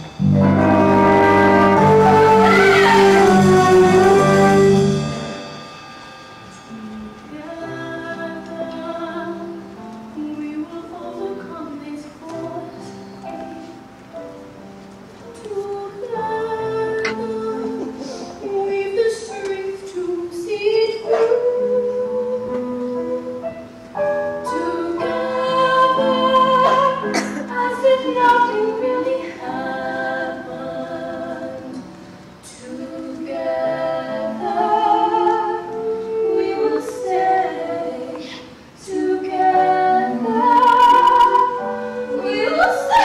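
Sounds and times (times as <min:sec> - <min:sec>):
group singing in harmony: 0:00.0 - 0:05.7, 0:15.4 - 0:23.7, 0:24.4 - 0:43.0.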